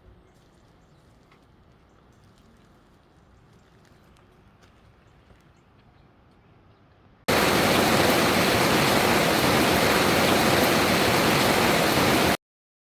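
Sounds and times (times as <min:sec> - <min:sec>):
torrential rain rushing water: 0:07.3 - 0:12.4.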